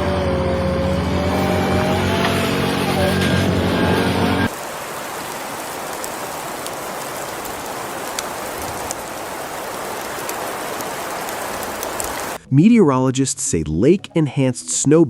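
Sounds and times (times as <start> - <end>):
car engine running: 0.0 - 4.5
rain hissing: 0.0 - 12.5.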